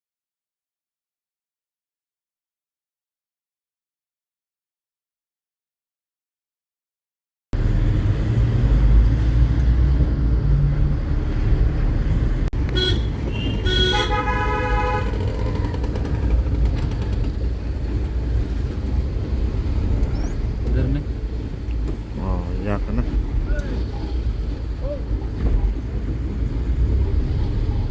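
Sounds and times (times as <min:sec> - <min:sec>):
vehicle engine and road rumble: 0:07.6 - 0:27.9
vehicle horn: 0:12.7 - 0:15.4.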